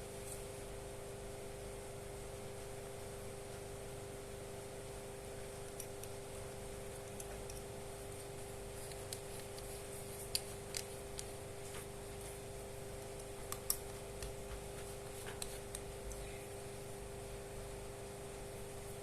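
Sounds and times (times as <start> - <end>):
faint steady hum: 0.0 - 19.0
small objects clicking and tapping: 13.0 - 14.6.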